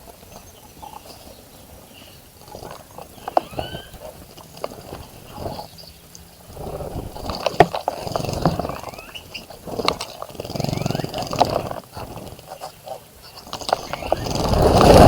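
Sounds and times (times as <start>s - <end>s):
bird chirps: 0.3s - 4.2s, 4.9s - 6.4s, 8.1s - 9.6s, 10.5s - 11.6s, 12.5s - 14.6s.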